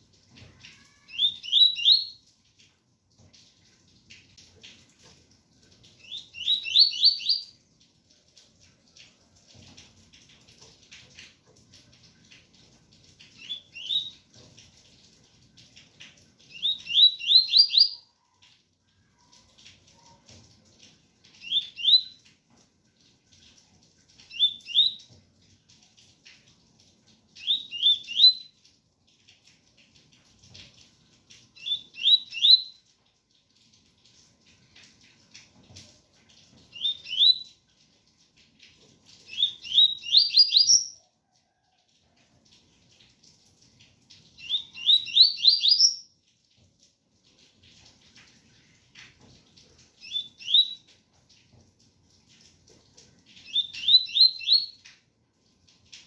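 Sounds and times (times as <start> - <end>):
faint rain patter: 0.0 - 56.0
bird whistling song: 1.1 - 2.2, 6.0 - 7.5, 13.4 - 14.1, 16.5 - 18.1, 21.4 - 22.2, 24.3 - 25.0, 27.4 - 28.5, 31.6 - 32.8, 36.7 - 37.5, 39.3 - 41.0, 44.4 - 46.1, 50.0 - 50.8, 53.4 - 54.8.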